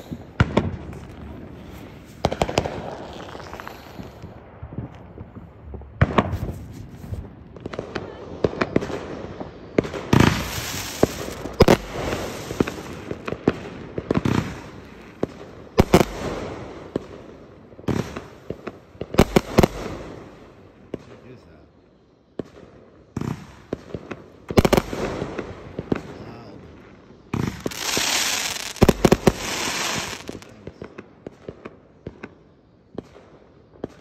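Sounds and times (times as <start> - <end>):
fireworks bangs and booms: 0.0 - 34.0
fireworks crackling hiss: 0.0 - 34.0.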